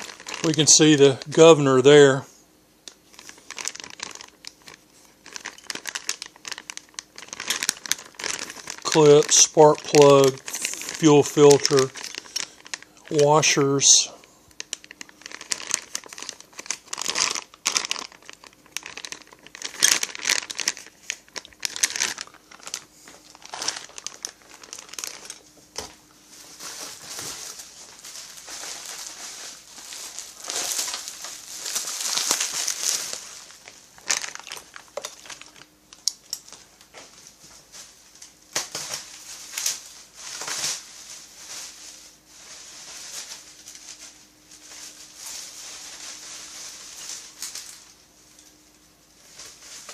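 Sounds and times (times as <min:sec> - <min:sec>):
plastic bags crinkling: 0:00.0 - 0:02.3, 0:02.9 - 0:49.9.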